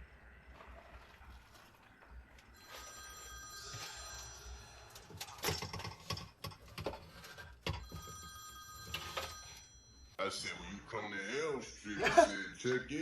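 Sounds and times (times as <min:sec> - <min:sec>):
telephone ringing: 0:02.5 - 0:10.5.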